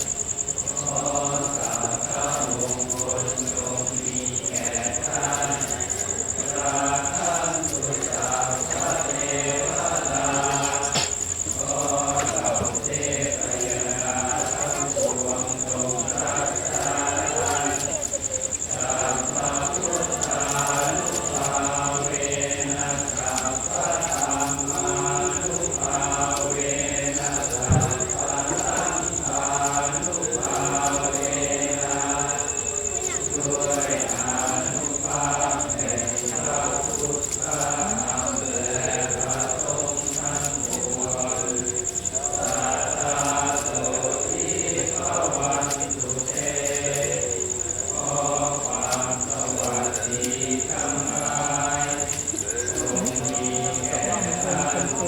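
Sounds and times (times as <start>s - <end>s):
group chanting in unison: 0.0s - 55.0s
short thump: 27.7s - 28.2s.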